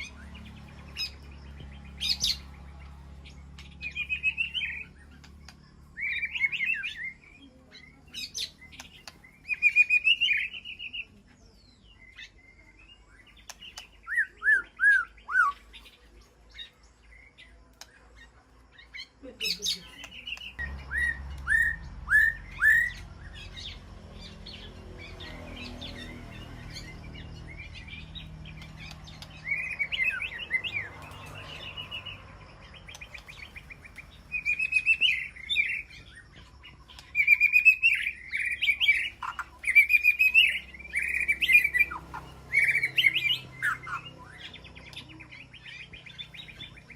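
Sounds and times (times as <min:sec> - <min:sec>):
bird whistling and chirping: 0:03.6 - 0:07.3, 0:08.2 - 0:11.1, 0:13.7 - 0:15.8, 0:19.5 - 0:23.5, 0:32.8 - 0:46.9.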